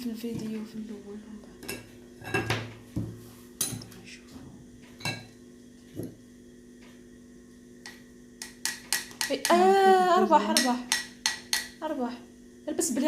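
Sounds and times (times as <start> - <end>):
faint steady hum: 0.0 - 13.0
utensils knocking on a mixing bowl: 7.8 - 9.7, 10.4 - 11.8.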